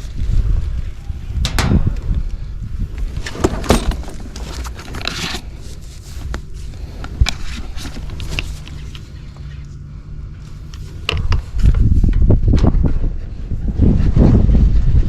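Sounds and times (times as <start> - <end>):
low steady hum: 0.0 - 15.0
hands handling tools: 3.0 - 9.5
clicks scrapes and rustling: 3.0 - 9.7.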